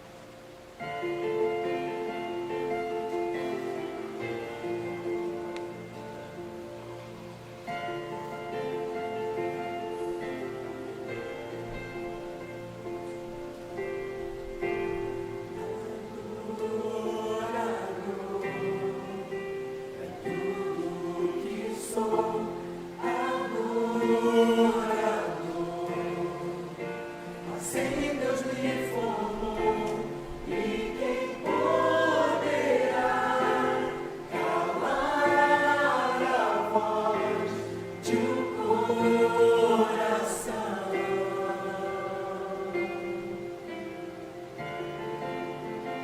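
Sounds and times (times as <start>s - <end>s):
mixed choir singing a hymn: 14.7s - 45.8s.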